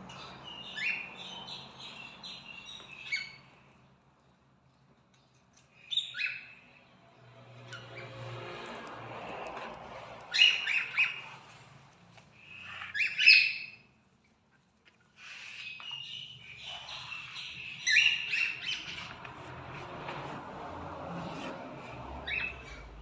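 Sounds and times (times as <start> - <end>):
soft bird chatter: 0.0 - 20.3
cockatiels chirping loudly: 0.2 - 3.4, 5.9 - 6.6, 10.3 - 11.6, 12.5 - 13.9, 15.2 - 19.4, 22.2 - 22.8.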